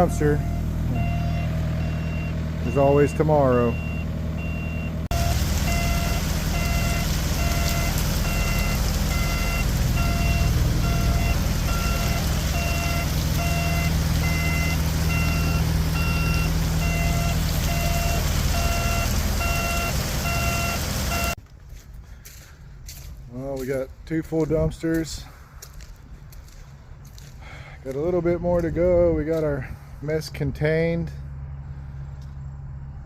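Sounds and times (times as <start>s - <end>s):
backup alarm beeping: 0.0s - 21.4s
diesel engine running: 0.0s - 33.0s.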